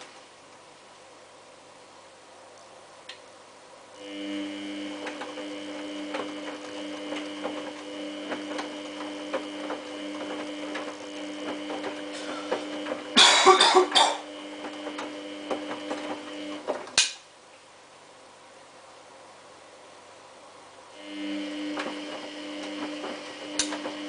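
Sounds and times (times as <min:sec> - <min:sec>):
washing machine drum motor hum: 0:04.0 - 0:17.0, 0:21.0 - 0:24.0.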